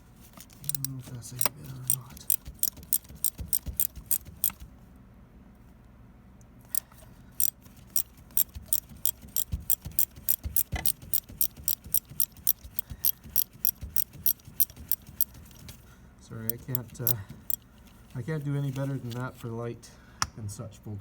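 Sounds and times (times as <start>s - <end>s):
ratchet wrench clicking: 0.4s - 4.7s, 6.6s - 15.8s, 16.4s - 18.2s.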